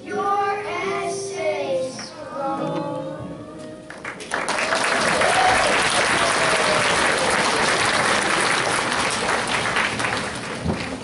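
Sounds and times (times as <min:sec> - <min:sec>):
audience applauding loudly: 0:03.9 - 0:11.0.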